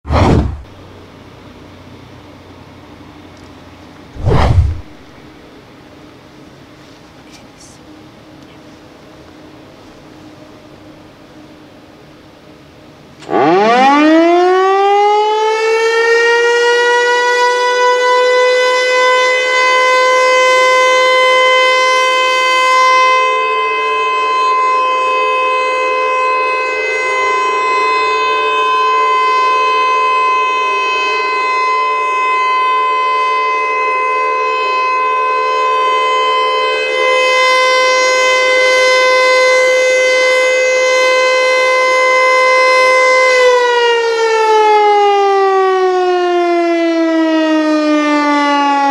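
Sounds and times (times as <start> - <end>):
electronic warning siren: 13.2 - 48.9.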